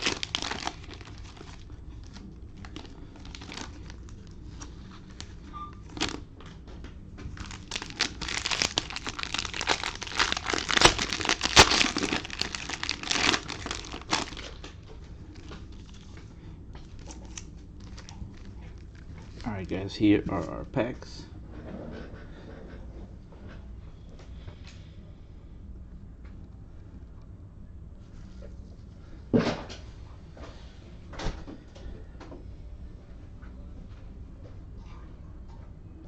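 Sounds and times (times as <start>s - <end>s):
cellophane crinkling and tearing: 0.0s - 6.2s, 7.3s - 16.2s, 16.8s - 19.5s.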